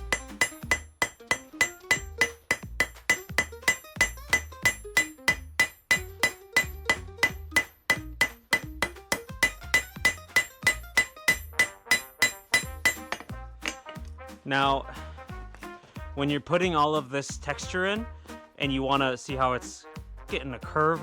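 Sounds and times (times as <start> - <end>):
hammer striking steel on anvil: 0.0 - 14.0.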